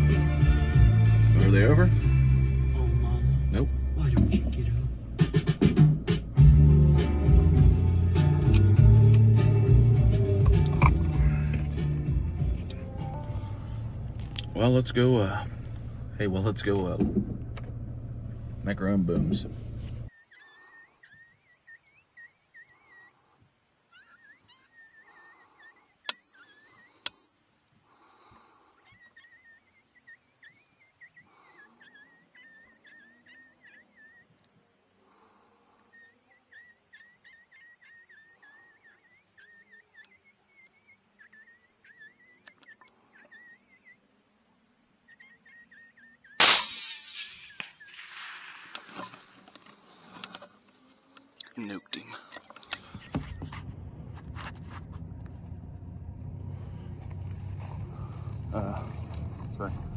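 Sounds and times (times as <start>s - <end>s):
night insects chirping: 0.0s - 59.9s
suppressed rifle shot: 46.4s - 49.8s
sharp clicks: 46.4s - 50.5s.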